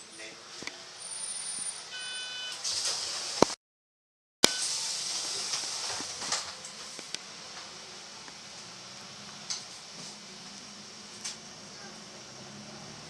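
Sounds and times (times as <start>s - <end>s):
electronic door chime: 1.9s - 2.6s.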